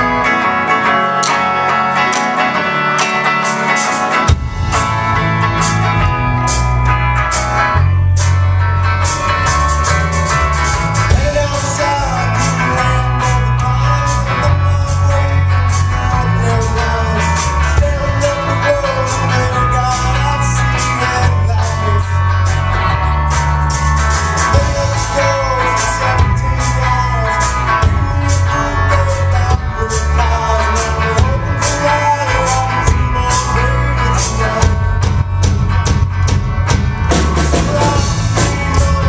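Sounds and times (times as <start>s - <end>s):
band playing country-rock: 0.0s - 39.0s
drums beating: 1.2s - 39.0s.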